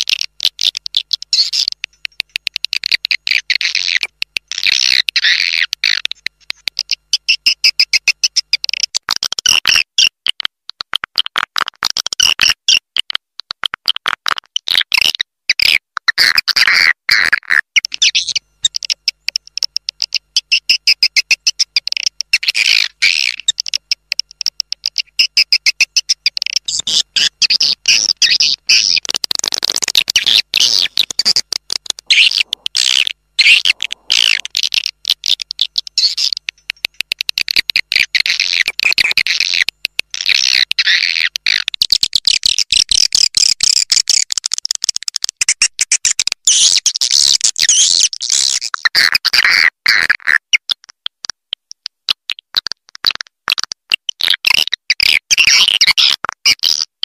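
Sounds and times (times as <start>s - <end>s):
swiftlets chirping twitters: 17.8s - 44.3s.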